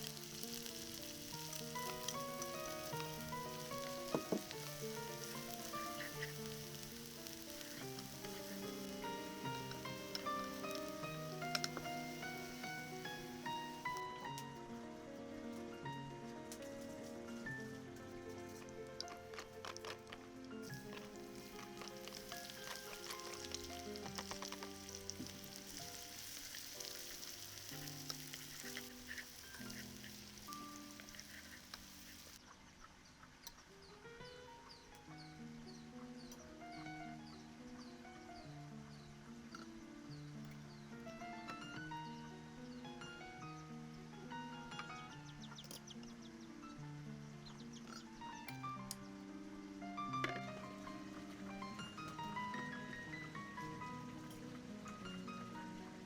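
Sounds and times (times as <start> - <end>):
food sizzling in a pan: 0.0 - 14.3, 20.6 - 32.4, 50.1 - 56.0
melodic background music: 0.0 - 32.4, 34.2 - 56.0.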